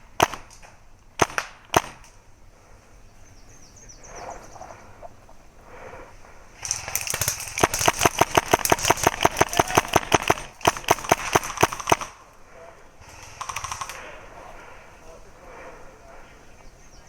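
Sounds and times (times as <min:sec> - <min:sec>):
airsoft gun firing rapidly: 0:00.2 - 0:00.6, 0:01.2 - 0:02.1, 0:06.6 - 0:12.2, 0:13.0 - 0:14.2.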